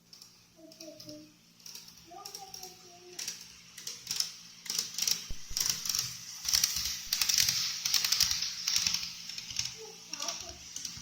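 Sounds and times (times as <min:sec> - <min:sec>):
model train wheels clicking: 0:00.0 - 0:11.0.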